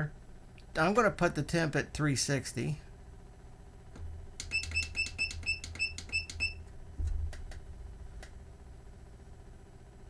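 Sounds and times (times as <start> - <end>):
short high beeps: 4.4 - 6.6.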